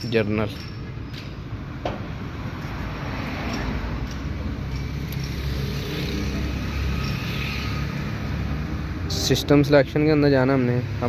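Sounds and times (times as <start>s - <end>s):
motor vehicle rumble: 0.0s - 11.0s.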